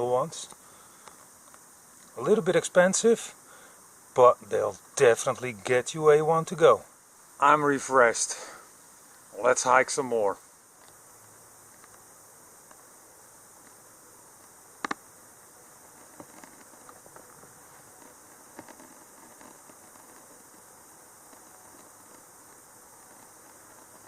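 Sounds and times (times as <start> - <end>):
small ticks: 0.4 - 2.3, 10.7 - 24.0.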